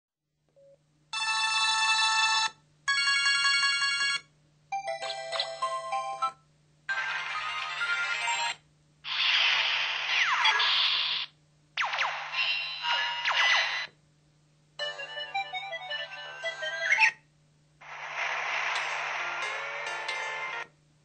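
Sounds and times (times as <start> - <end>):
ringtone melody: 1.2 - 8.6, 14.8 - 17.2, 18.8 - 20.7
sweeping electronic effect sounds: 17.8 - 20.6.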